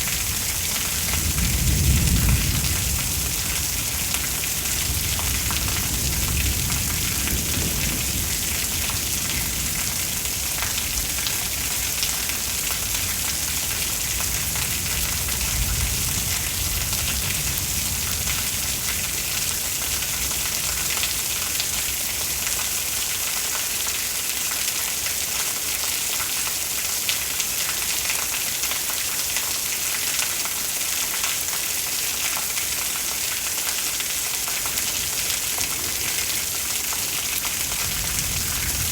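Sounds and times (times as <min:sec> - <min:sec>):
thunder rumble: 0:00.0 - 0:18.9, 0:35.0 - 0:38.9
heavy rain: 0:00.0 - 0:38.9.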